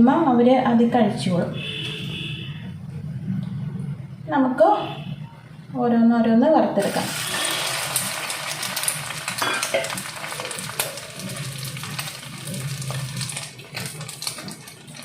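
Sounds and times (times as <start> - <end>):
cutlets sizzling in hot oil: 6.8 - 15.0.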